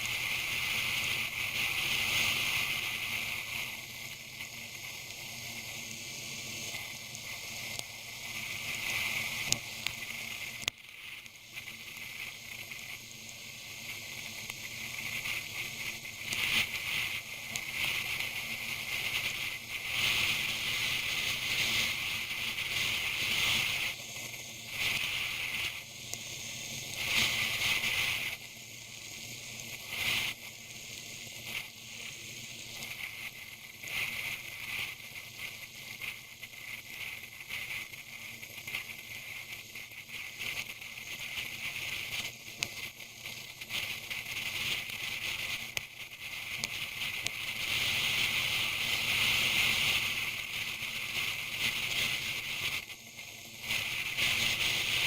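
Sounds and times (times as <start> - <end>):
rain spray hiss: 0.0 - 55.0
wind noise on camera: 32.6 - 52.9, 53.6 - 55.0.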